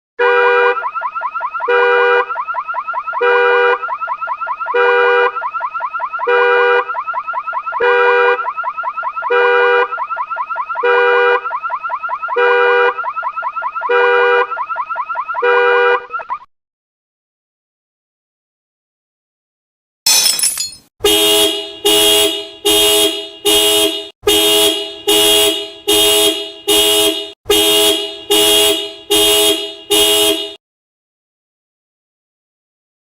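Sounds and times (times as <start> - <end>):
car horn honking: 0.2 - 0.8, 20.4 - 30.6
car alarm electronic warble: 0.7 - 15.5.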